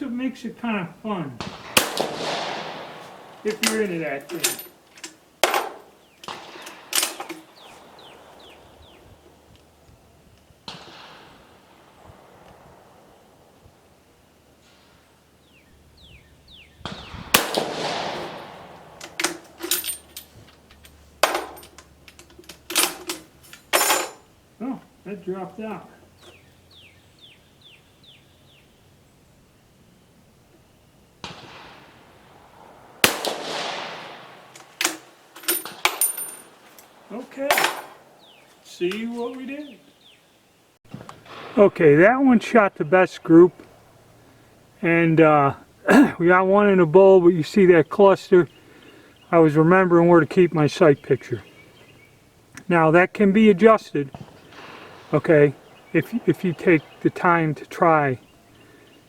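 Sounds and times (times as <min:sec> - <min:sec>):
bird chirping: 0:00.0 - 0:33.0, 0:33.6 - 0:59.0
rifle shot: 0:01.4 - 0:09.8, 0:10.6 - 0:21.6, 0:31.2 - 0:38.2, 0:40.9 - 0:42.6, 0:54.1 - 0:57.0.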